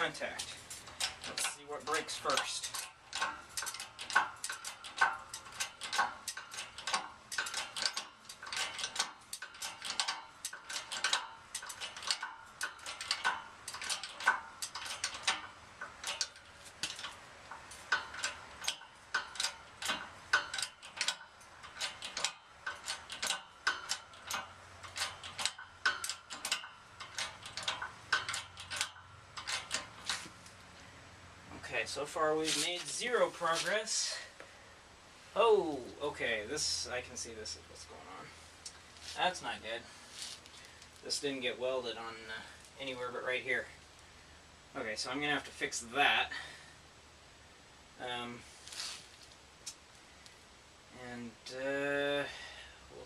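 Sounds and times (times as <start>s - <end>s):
sharp metallic clicks of a press: 0.4s - 30.2s.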